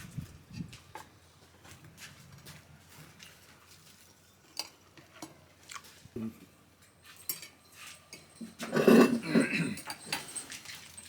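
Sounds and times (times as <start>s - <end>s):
dishes and cutlery clinking: 6.8s - 11.0s.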